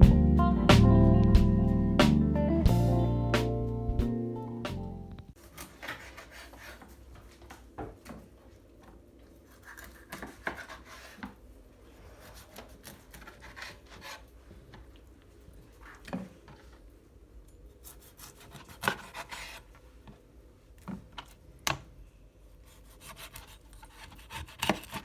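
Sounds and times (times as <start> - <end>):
guitar music: 0.0 - 5.3
scraping and rubbing food preparation: 5.4 - 7.6, 8.6 - 16.9, 17.8 - 20.0, 22.6 - 25.0.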